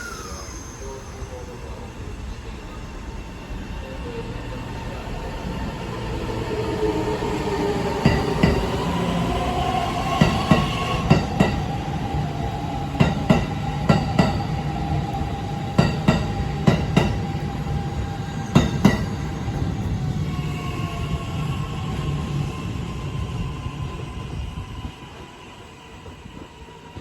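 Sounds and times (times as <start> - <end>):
train rumble: 0.0 - 27.0
train whine: 0.0 - 27.0
train wheels clacking over rail joints: 10.1 - 11.8, 12.9 - 14.7, 15.7 - 17.5, 18.4 - 19.6.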